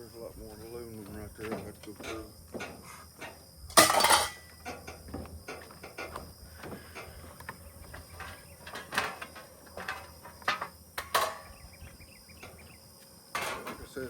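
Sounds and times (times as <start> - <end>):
scrap metal clanking: 1.5 - 7.2, 8.0 - 11.5.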